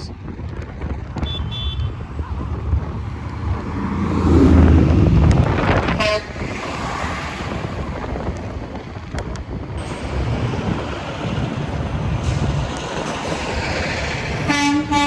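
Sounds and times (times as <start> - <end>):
truck horn: 1.2 - 2.0, 5.8 - 6.4, 14.5 - 15.0
truck engine driving past: 2.6 - 8.3, 9.7 - 15.0.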